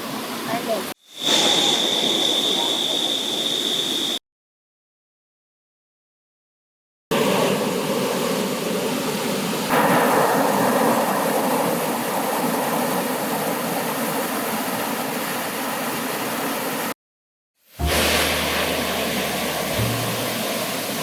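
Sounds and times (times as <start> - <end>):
rushing river water: 17.7 - 21.0.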